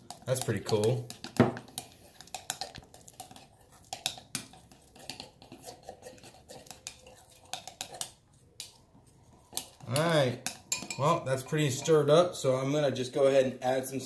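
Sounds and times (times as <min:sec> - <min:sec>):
utensil clinking against bowl: 0:00.0 - 0:08.1, 0:09.5 - 0:12.0.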